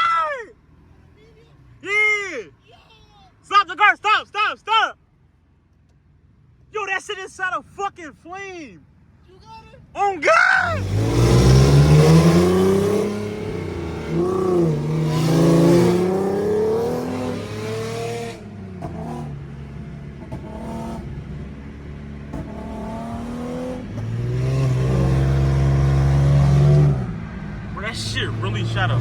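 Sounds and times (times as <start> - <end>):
car engine revving: 10.6 - 29.0.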